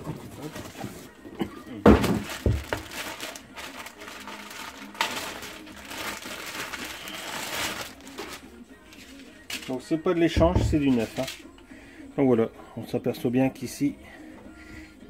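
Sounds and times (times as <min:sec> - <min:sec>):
packaging crinkling and rustling: 0:01.9 - 0:09.9, 0:10.7 - 0:11.4.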